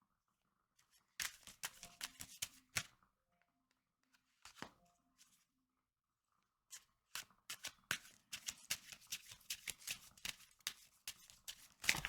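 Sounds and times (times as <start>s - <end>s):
cards being shuffled: 1.2s - 2.9s, 4.5s - 4.7s, 7.2s - 12.0s.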